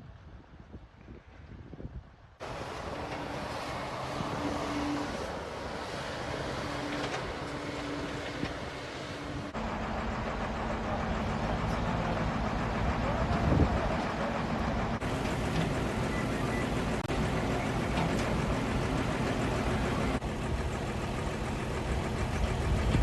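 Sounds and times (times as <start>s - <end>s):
vehicle engine running: 2.4s - 23.0s.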